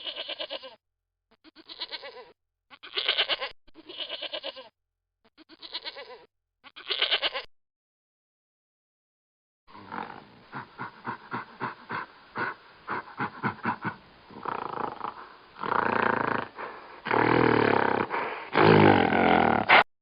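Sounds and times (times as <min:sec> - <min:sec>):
animal grunting calls: 0:09.7 - 0:19.8
animal long loud calls: 0:09.7 - 0:19.8.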